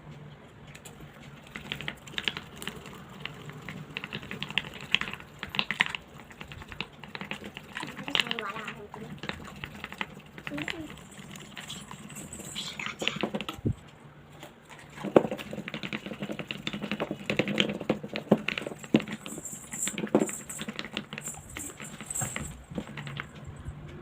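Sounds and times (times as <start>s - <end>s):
slime squelching in bowl: 0.9s - 13.5s.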